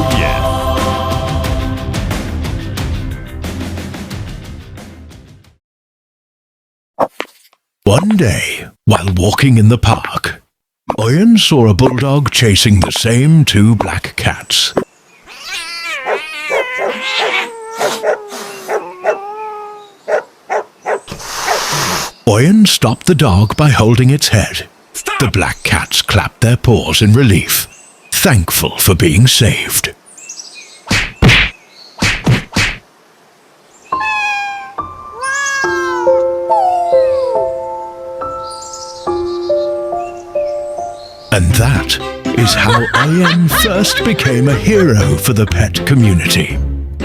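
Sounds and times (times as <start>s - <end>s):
cat meowing: 15.3s - 20.0s, 33.9s - 37.4s
dog wailing: 15.3s - 21.7s, 34.0s - 37.5s
dog yelping: 15.3s - 21.8s, 34.0s - 37.4s
held musical chords: 36.0s - 47.0s.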